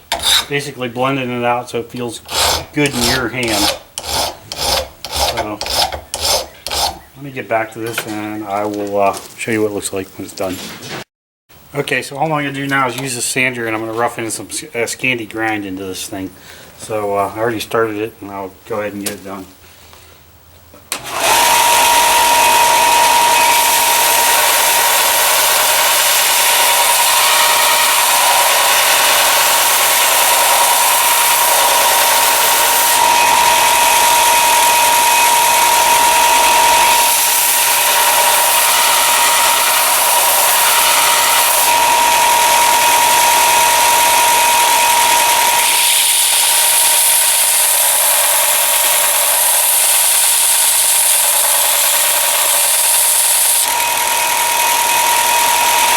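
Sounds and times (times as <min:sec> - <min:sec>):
electric sander grinding metal: 0:00.0 - 0:00.6, 0:02.2 - 0:07.1, 0:21.0 - 0:55.9.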